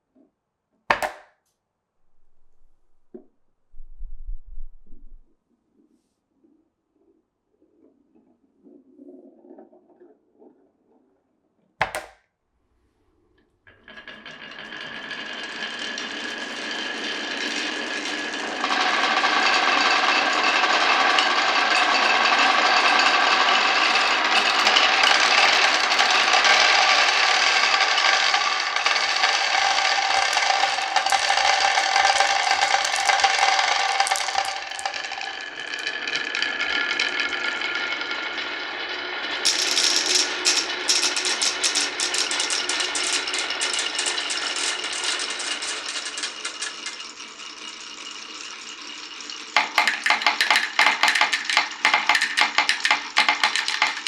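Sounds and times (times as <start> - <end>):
marbles rattling on wooden run: 0.9 - 1.3, 11.8 - 12.2, 13.7 - 54.0
marbles clicking together: 11.8 - 12.2, 15.2 - 37.4, 39.4 - 47.4, 48.9 - 54.0.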